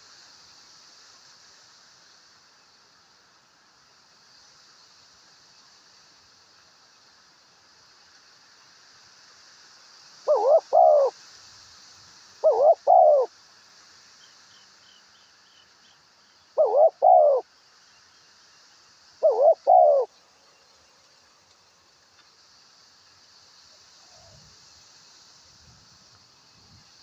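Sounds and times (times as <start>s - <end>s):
steady high hiss: 0.0s - 27.0s
dove cooing: 10.3s - 11.1s, 12.4s - 13.3s, 16.6s - 17.4s, 19.2s - 20.1s
small bird chirping: 10.3s - 11.1s, 12.4s - 13.3s, 15.5s - 17.4s, 19.2s - 21.1s.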